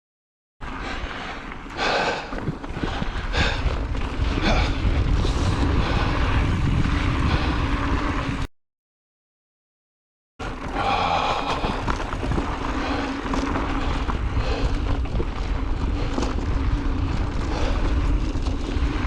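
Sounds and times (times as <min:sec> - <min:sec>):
tyres rolling on dirt: 0:00.7 - 0:08.4, 0:10.4 - 0:19.0
wind on microphone: 0:02.3 - 0:08.5, 0:10.6 - 0:19.0
bike rattling clicks and knocks: 0:10.4 - 0:19.0.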